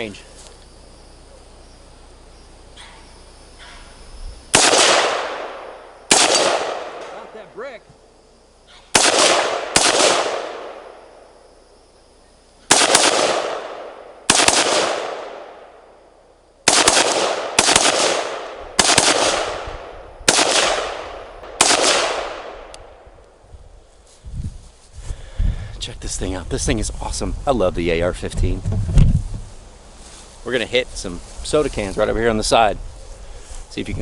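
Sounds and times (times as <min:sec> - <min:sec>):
rifle shots echoing: 0:04.5 - 0:07.5, 0:08.9 - 0:11.3, 0:12.7 - 0:23.0.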